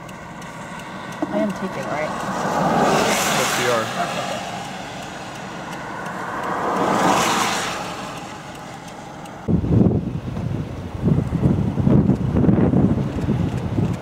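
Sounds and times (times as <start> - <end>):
car passing: 0.0 - 9.7
wind gusts on microphone: 0.8 - 14.0.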